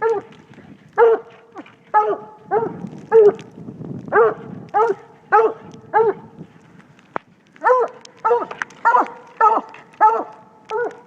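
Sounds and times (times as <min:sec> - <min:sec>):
dog chop barking: 0:01.0 - 0:01.3, 0:04.1 - 0:06.2, 0:07.6 - 0:11.0.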